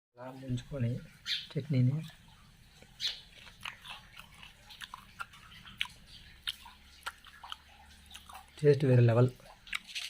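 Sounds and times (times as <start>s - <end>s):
person chewing: 2.1s - 10.0s
wet mouth clicks: 2.8s - 8.6s, 9.4s - 10.0s.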